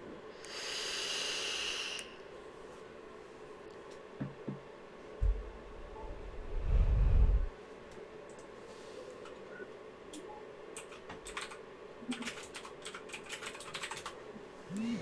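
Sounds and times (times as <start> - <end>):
faint steady hum: 0.0 - 15.0
typing on computer keyboard: 10.8 - 14.2.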